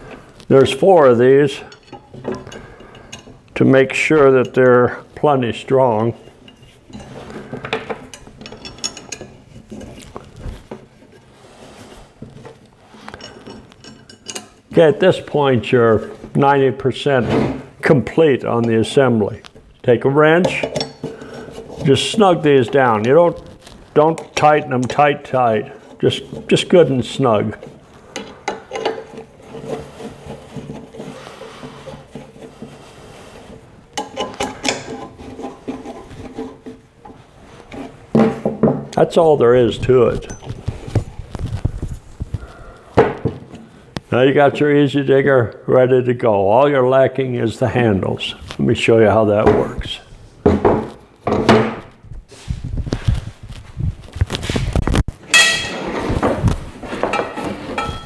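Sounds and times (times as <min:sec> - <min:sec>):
wrench scraping on metal bolts: 0:00.7 - 0:04.9, 0:05.5 - 0:11.4, 0:12.4 - 0:15.4, 0:20.2 - 0:37.1, 0:55.3 - 0:56.0, 0:57.1 - 0:58.0
metallic clicks of steel parts: 0:01.6 - 0:03.6, 0:06.4 - 0:10.2, 0:13.0 - 0:14.7, 0:20.4 - 0:21.2.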